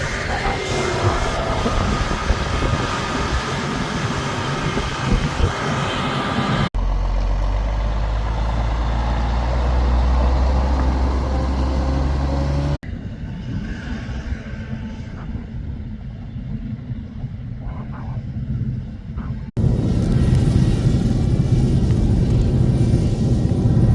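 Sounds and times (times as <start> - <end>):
heavy machinery engines running: 0.0 - 17.7.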